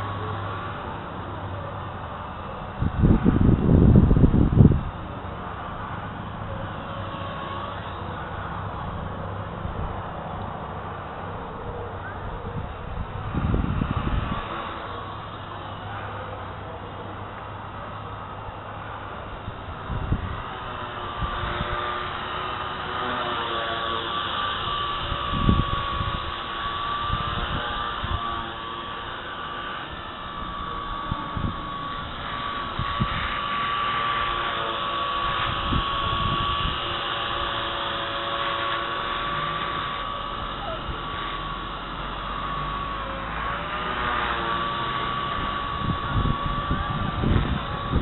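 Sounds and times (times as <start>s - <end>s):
toy helicopter motor whine: 0.0s - 48.0s
wind buffeting microphone: 2.3s - 11.1s, 11.7s - 15.6s, 18.5s - 22.9s, 24.5s - 42.4s, 45.2s - 48.0s.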